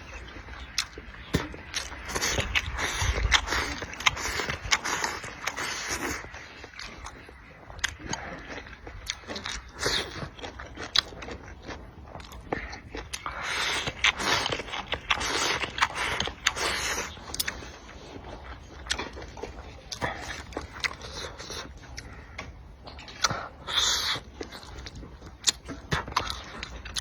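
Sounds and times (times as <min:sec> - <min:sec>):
person chewing: 0:00.0 - 0:27.0.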